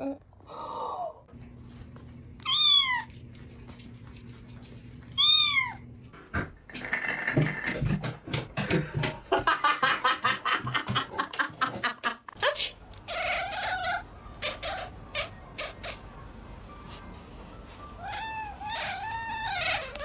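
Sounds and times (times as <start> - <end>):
cat meowing: 18.0 - 20.0.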